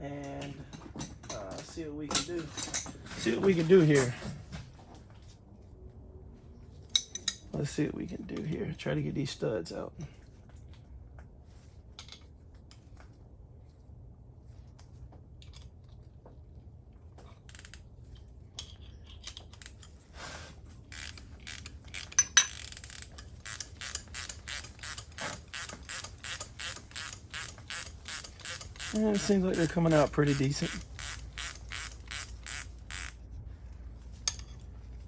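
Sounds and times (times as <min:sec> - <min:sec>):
ratchet wrench clicking: 0:20.9 - 0:33.2.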